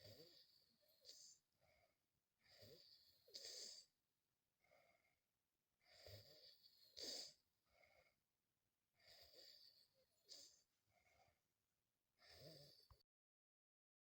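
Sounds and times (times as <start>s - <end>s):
child snoring quietly: 0.0s - 4.0s, 5.8s - 8.2s, 9.0s - 11.4s, 12.2s - 13.0s.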